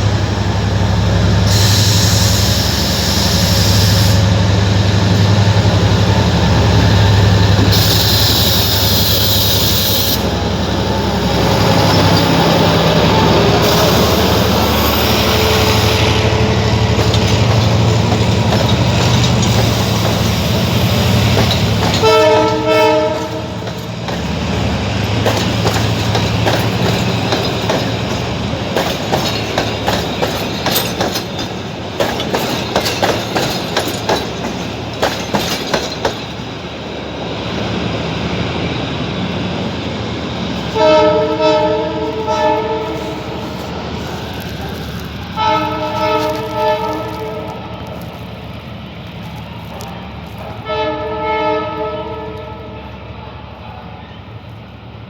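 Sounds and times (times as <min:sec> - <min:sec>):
train wheels clattering on rails: 0:00.0 - 0:38.1
train horn blasts: 0:21.8 - 0:23.7, 0:40.7 - 0:43.5, 0:45.3 - 0:48.0, 0:50.6 - 0:53.0.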